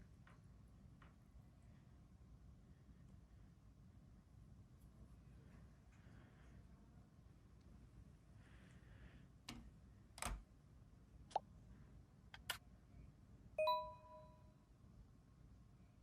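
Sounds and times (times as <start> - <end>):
short ringing ding: 13.6 - 14.4.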